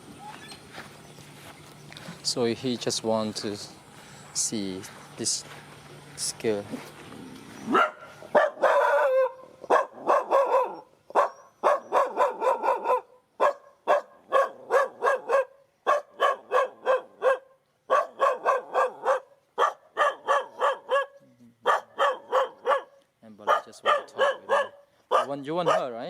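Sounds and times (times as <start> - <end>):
dog barking: 7.7 - 26.0.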